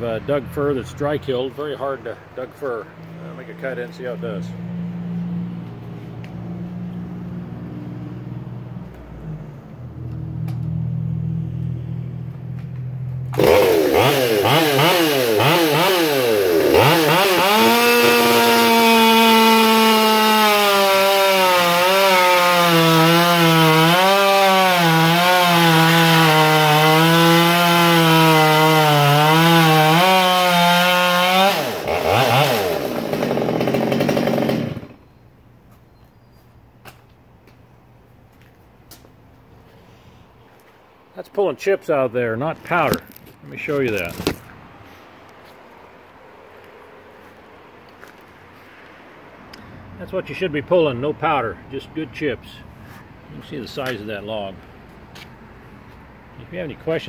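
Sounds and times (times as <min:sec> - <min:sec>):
chainsaw cutting log: 0:13.2 - 0:35.0, 0:42.7 - 0:44.4
chainsaw idling and revving: 0:13.2 - 0:35.0.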